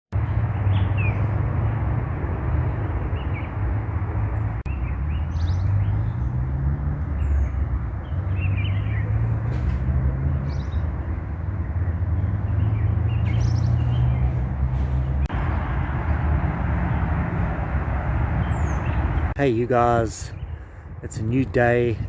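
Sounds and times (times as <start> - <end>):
bird chirps: 0.5 - 1.8, 4.3 - 6.4, 7.0 - 9.6, 10.3 - 16.2, 18.4 - 19.2.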